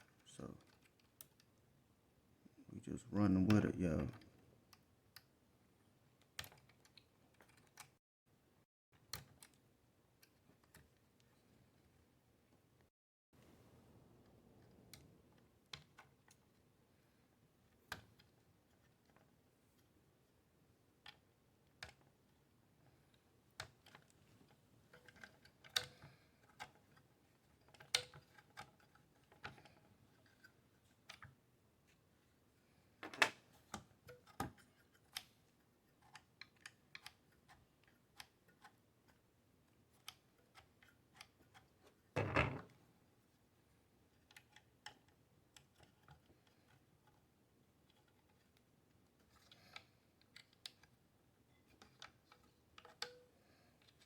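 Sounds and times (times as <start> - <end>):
loud handling noise: 42.2 - 42.8.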